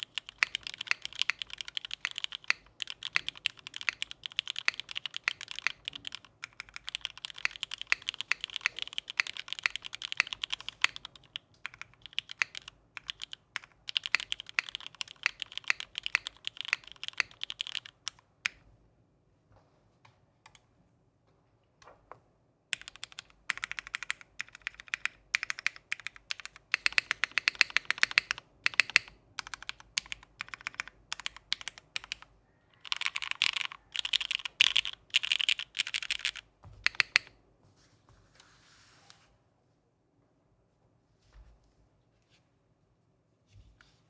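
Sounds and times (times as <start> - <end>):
typing on mechanical keyboard: 0.0 - 18.6, 22.7 - 37.4.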